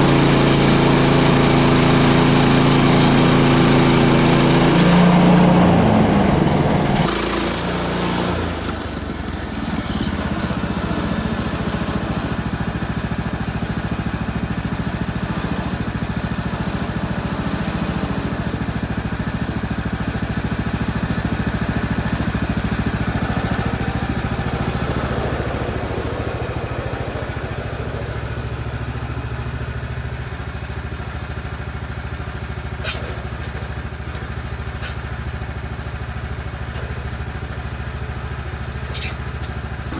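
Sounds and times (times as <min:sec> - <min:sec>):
small gasoline engine running: 0:00.0 - 0:39.9
high chirps: 0:35.2 - 0:35.6.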